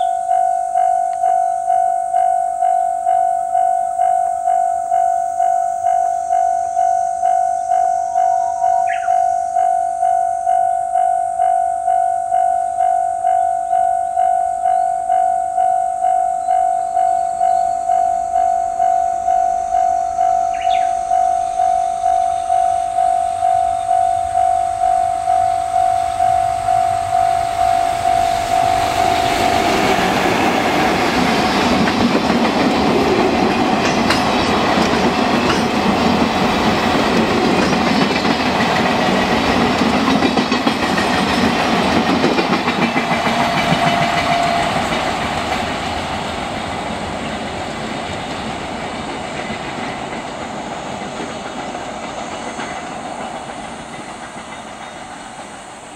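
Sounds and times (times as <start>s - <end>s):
level crossing bell ringing: 0.0s - 30.1s
train wheels clattering over rails: 20.2s - 55.9s.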